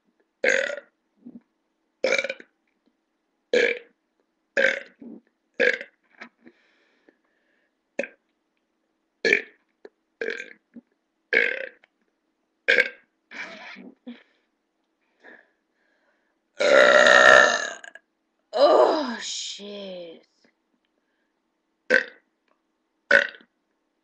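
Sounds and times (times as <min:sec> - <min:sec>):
woman burping: 0:00.4 - 0:01.4, 0:16.6 - 0:18.0.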